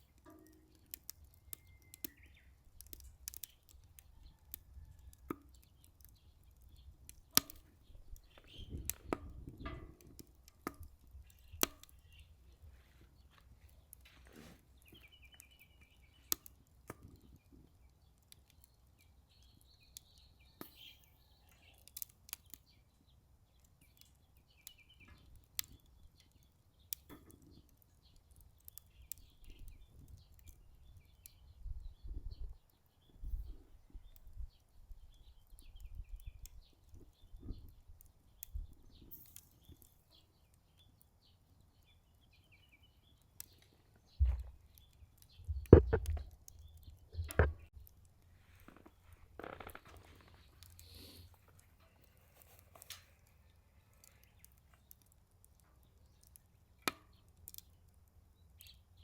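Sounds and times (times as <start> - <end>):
small birds chirping: 0.0 - 59.0
wood fire crackling: 0.0 - 59.0.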